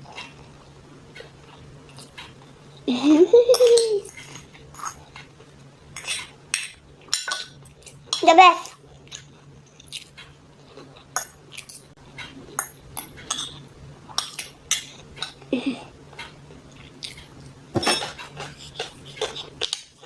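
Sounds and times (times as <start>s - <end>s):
faint low hum: 0.0s - 20.0s
cutlery clinking against a plate: 6.0s - 8.2s, 11.2s - 15.4s, 17.8s - 20.0s.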